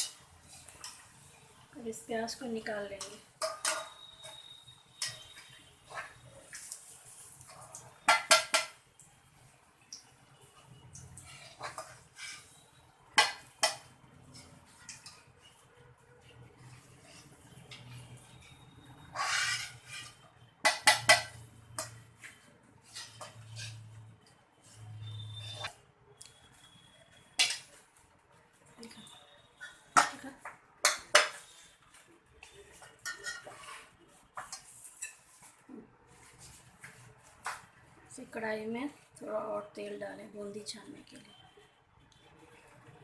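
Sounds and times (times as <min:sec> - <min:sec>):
metal utensils clinking and scraping: 0:00.0 - 0:01.2, 0:02.9 - 0:08.8, 0:11.0 - 0:12.6, 0:13.2 - 0:15.7, 0:16.5 - 0:25.7, 0:27.3 - 0:27.8, 0:29.6 - 0:35.5
metal utensils clinking on cookware: 0:02.8 - 0:06.7, 0:13.2 - 0:15.6, 0:27.3 - 0:27.8, 0:32.7 - 0:35.3.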